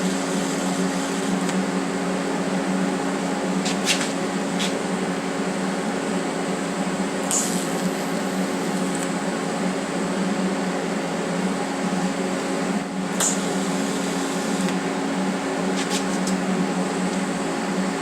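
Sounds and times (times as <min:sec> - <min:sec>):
machine hum with hiss: 0:00.0 - 0:18.0.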